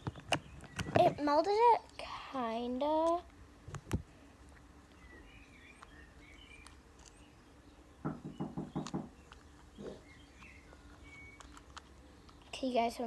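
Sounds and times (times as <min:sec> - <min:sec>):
faint bird chirps: 0:04.9 - 0:13.0
short knocks: 0:08.0 - 0:09.2.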